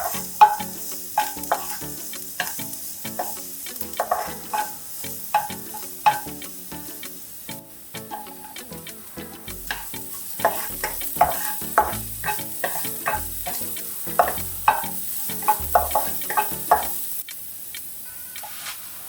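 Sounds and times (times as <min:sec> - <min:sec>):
spatula scraping a pan: 0:00.0 - 0:06.3, 0:09.3 - 0:17.0
oil sizzling in a pan: 0:00.0 - 0:19.0.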